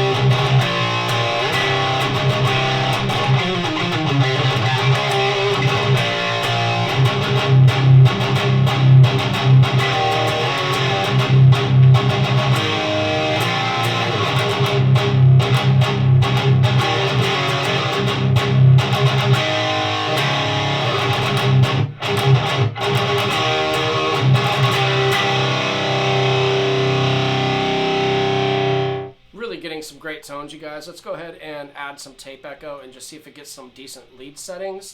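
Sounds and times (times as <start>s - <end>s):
distorted electric guitar riffing: 0.0s - 29.2s.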